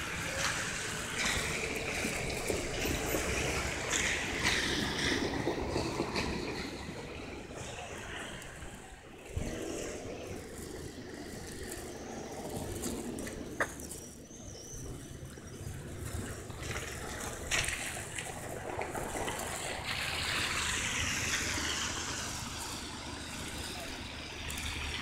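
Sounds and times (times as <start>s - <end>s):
road traffic passing: 0.0s - 25.0s
vehicle passing by: 16.0s - 25.0s.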